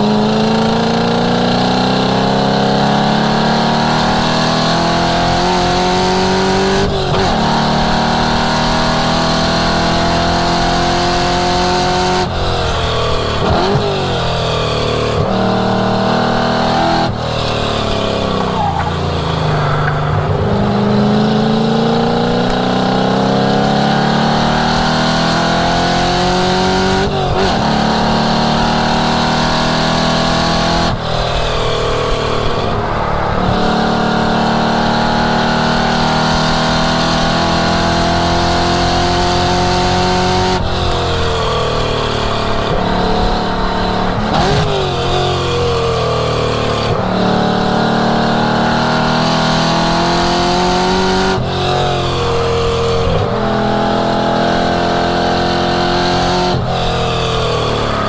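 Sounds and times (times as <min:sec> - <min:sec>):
race car engine revving: 0:00.0 - 0:58.0.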